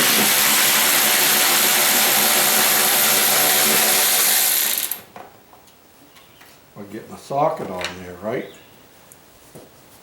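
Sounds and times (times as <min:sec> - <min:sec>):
electric ratchet wrench running: 0:00.0 - 0:05.1.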